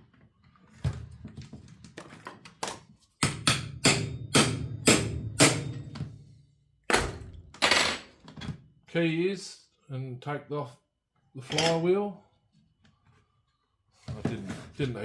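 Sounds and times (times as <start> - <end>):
sharp metallic knocks on a saw: 3.2 - 5.9.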